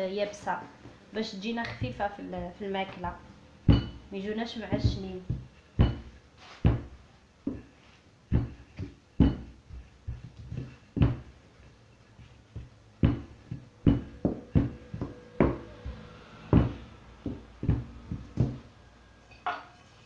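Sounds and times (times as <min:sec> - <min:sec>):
rolling pin thumping on work surface: 0:03.7 - 0:04.0, 0:04.7 - 0:07.7, 0:08.3 - 0:11.4, 0:12.5 - 0:18.7.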